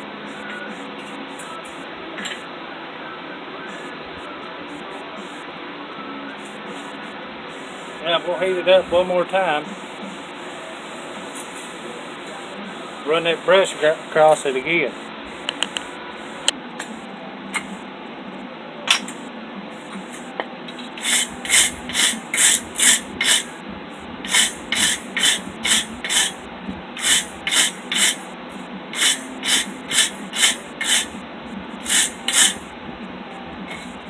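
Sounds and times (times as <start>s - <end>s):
wire brush scraping steel: 21.0s - 23.5s, 24.2s - 26.4s, 27.0s - 28.2s, 29.0s - 31.2s, 31.8s - 32.6s.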